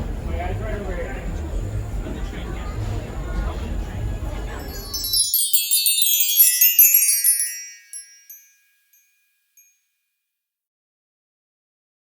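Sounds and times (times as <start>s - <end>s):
shimmering chimes: 4.6s - 9.8s.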